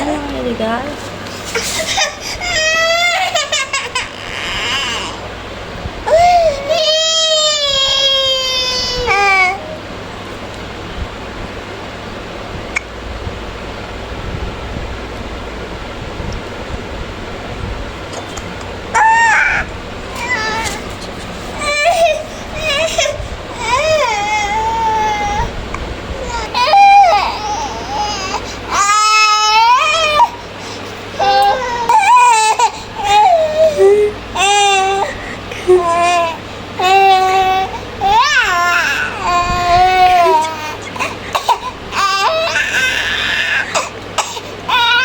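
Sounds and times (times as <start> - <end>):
baby crying: 1.8 - 5.2, 6.1 - 9.7, 18.9 - 20.9, 21.6 - 25.6, 26.2 - 30.4, 31.2 - 45.0.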